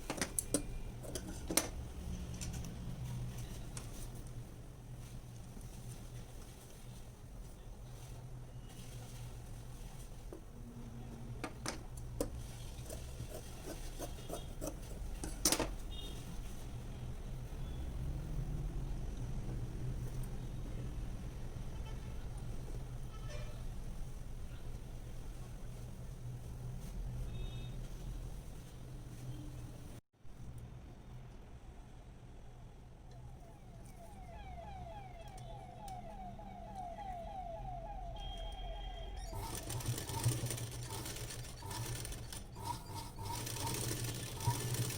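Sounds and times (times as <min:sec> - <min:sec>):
sewing machine needle ticking: 0:39.3 - 0:44.9.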